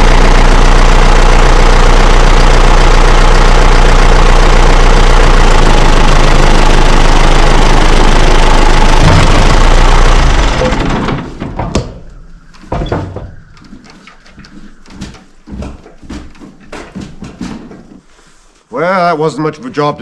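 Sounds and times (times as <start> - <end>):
tractor diesel engine idling: 0.0 - 13.8.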